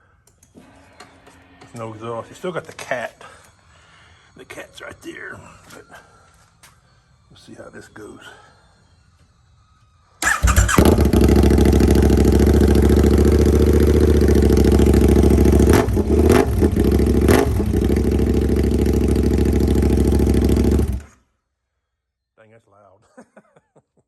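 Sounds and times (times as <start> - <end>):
loud motorcycle engine revving: 10.2 - 21.1.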